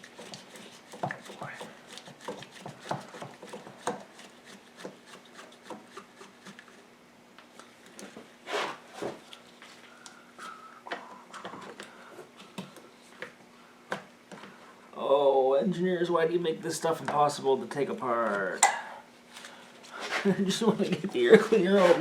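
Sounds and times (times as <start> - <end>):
faint steady hum: 0.0 - 22.0
parts scraping and rubbing: 8.4 - 9.3, 21.2 - 22.0.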